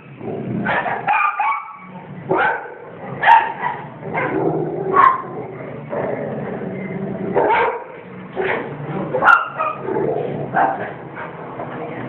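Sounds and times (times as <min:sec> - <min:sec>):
dog barking sharply: 0:00.8 - 0:01.8
dogs whining: 0:03.4 - 0:07.8.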